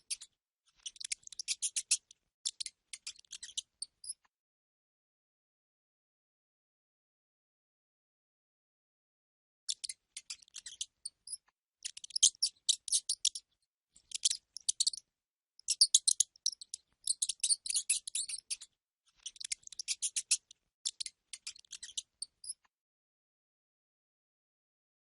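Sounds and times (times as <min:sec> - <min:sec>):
rat squeaking: 0:00.0 - 0:04.2, 0:09.7 - 0:22.6.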